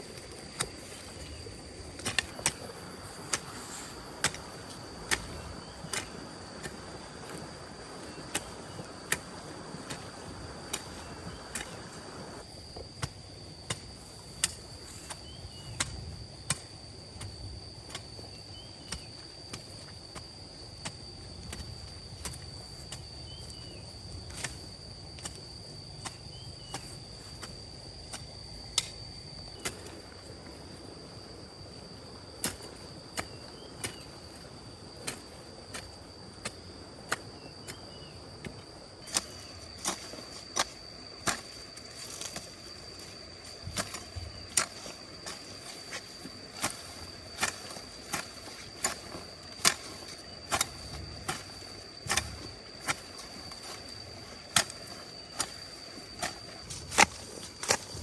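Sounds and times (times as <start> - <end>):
high-pitched insect drone: 39.0 - 58.0.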